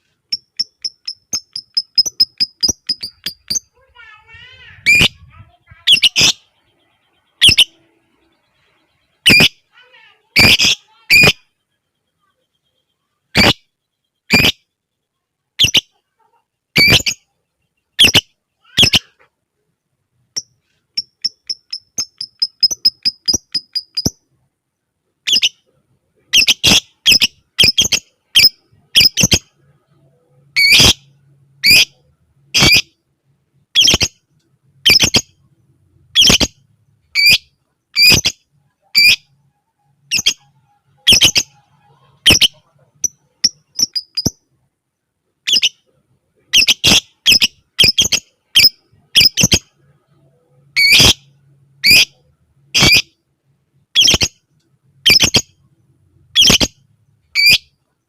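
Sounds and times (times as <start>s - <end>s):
quick ticking chirps: 0.2s - 3.8s, 20.3s - 24.3s, 42.3s - 44.4s
lovebird squawking: 0.3s - 6.6s, 7.4s - 7.8s, 9.2s - 11.5s, 16.8s - 17.2s, 18.0s - 19.3s, 26.3s - 29.4s, 30.5s - 32.0s, 32.6s - 32.9s, 33.7s - 34.1s, 34.8s - 35.2s, 36.1s - 36.6s, 37.2s - 39.3s, 40.1s - 44.4s, 46.5s - 49.6s, 50.8s - 52.2s, 52.8s - 53.1s, 54.0s - 54.3s, 55.0s - 55.4s, 56.3s - 56.8s, 57.4s - 57.7s.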